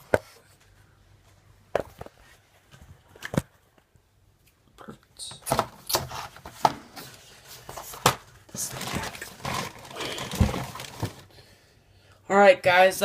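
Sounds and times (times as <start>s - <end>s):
rustling of bags and packaging: 5.5s - 11.4s.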